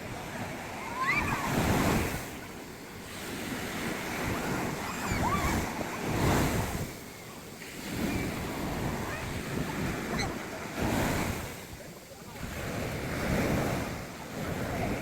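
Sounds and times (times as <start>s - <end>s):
waves breaking on a beach: 0.0s - 15.0s.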